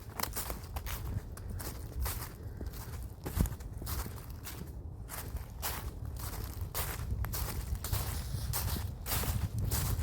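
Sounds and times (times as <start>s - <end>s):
footsteps on forest path: 0.0s - 10.0s.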